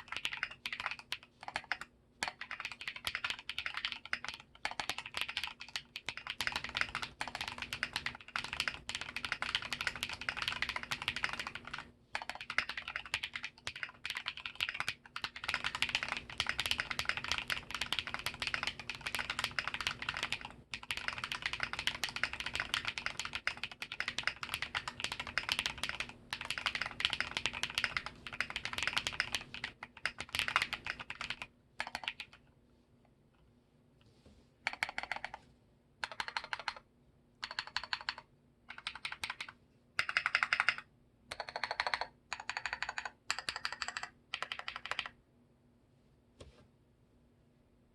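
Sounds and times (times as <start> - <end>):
mechanical keyboard keystroke clacks: 37.4 - 45.1.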